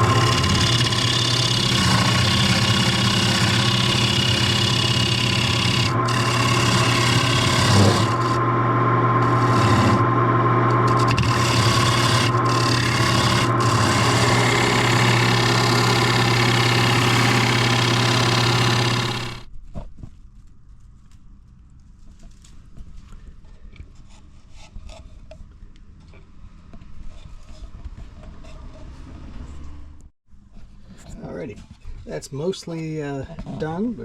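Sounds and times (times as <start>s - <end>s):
gouge scraping spinning wood: 0.0s - 19.5s
wood lathe motor humming: 0.0s - 19.5s.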